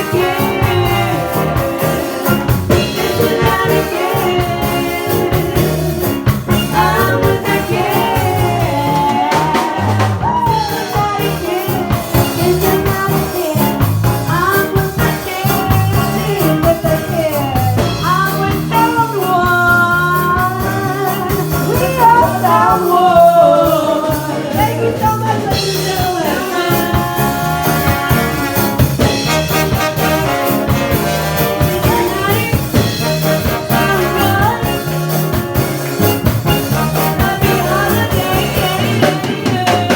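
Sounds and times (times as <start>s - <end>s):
person singing lead vocal: 0.0s - 28.2s, 36.8s - 39.9s
live band playing: 0.0s - 39.9s.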